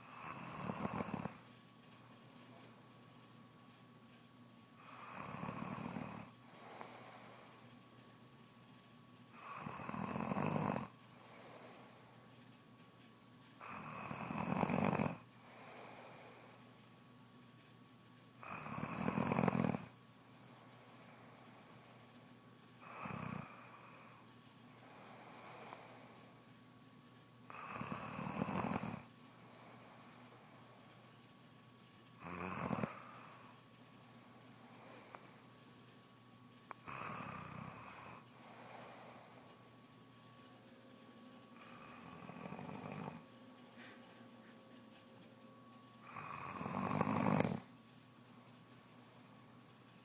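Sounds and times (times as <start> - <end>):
woman snoring: 0.0 - 1.4, 4.8 - 7.2, 9.4 - 10.9, 13.6 - 16.1, 18.4 - 19.9, 22.8 - 24.1, 27.5 - 29.1, 32.2 - 33.5, 36.8 - 39.1, 41.6 - 43.2, 46.0 - 47.7
quiet breathing: 4.8 - 12.6, 13.6 - 17.0, 18.4 - 26.7, 27.5 - 31.5, 32.1 - 50.0
soft breath: 6.4 - 8.2, 11.1 - 12.5, 15.4 - 16.8, 20.3 - 26.5, 32.9 - 35.5, 37.9 - 39.7, 43.1 - 44.8.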